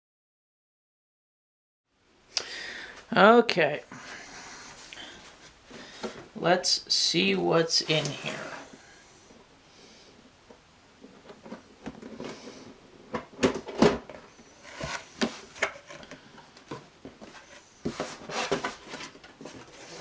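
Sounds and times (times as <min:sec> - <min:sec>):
packaging rustling and scraping: 0:14.5 - 0:20.0.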